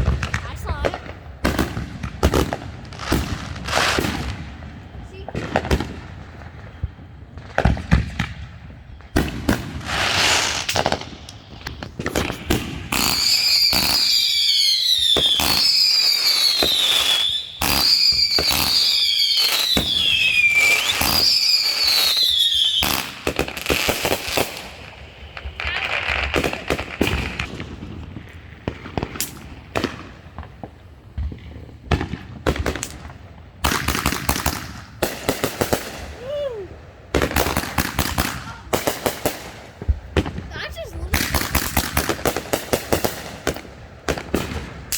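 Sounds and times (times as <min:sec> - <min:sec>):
fireworks bangs and crackles: 0:00.0 - 0:44.9
high warbling firework whistles: 0:12.2 - 0:23.0.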